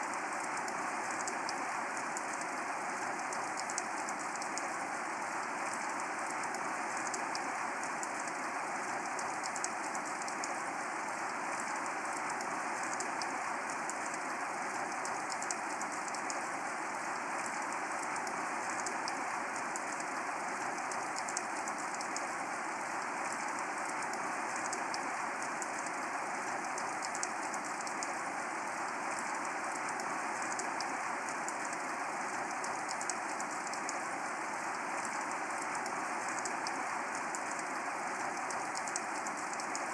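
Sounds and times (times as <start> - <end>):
steady rain: 0.0 - 39.9
raindrop ticks: 0.1 - 39.9.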